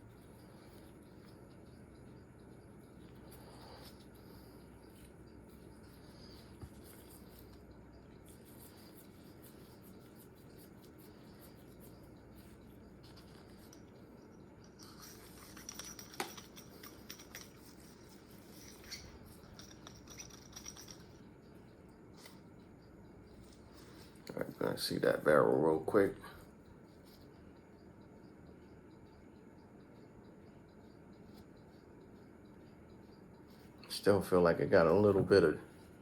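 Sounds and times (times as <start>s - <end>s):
faint scratching and rubbing: 0.0s - 21.6s.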